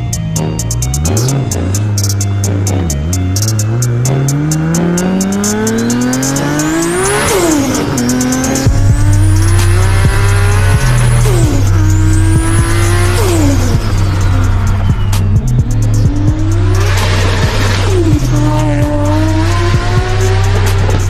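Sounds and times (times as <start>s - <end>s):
car engine accelerating hard: 0.0s - 21.0s
music with bass beat: 0.0s - 21.0s
turbo whine: 0.0s - 21.0s.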